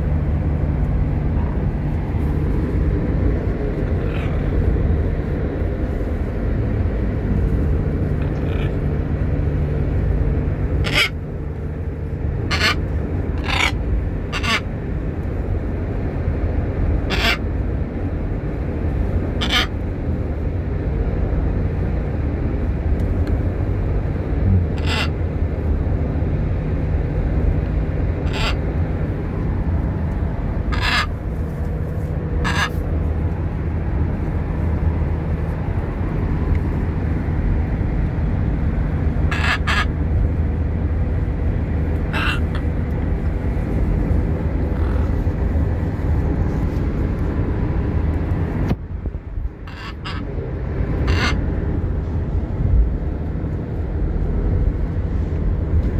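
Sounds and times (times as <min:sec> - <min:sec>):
low background rumble: 0:00.0 - 0:55.9
parrot squawking: 0:08.2 - 0:08.8, 0:10.8 - 0:11.2, 0:12.4 - 0:14.7, 0:17.0 - 0:17.4, 0:19.4 - 0:19.8, 0:24.6 - 0:25.2, 0:28.2 - 0:28.6, 0:30.6 - 0:31.2, 0:32.4 - 0:32.8, 0:39.3 - 0:40.0, 0:42.1 - 0:42.7, 0:44.7 - 0:45.2, 0:49.6 - 0:50.3, 0:51.0 - 0:51.4.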